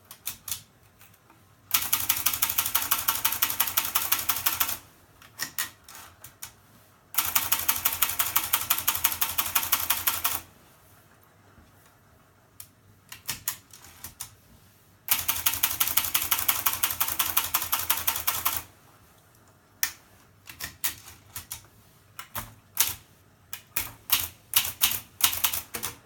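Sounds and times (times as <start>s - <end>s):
typewriter keystrokes: 0.1s - 0.7s, 1.7s - 6.6s, 7.2s - 10.4s, 13.1s - 14.3s, 15.1s - 18.7s, 19.8s - 21.6s, 22.2s - 23.0s, 23.6s - 26.0s.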